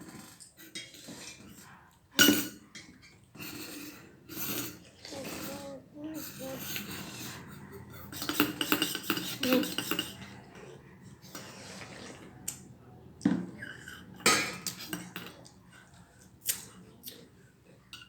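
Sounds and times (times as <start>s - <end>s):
cutlery clinking on a plate: 0.0s - 1.6s, 2.2s - 5.6s, 8.1s - 10.4s, 13.3s - 15.5s.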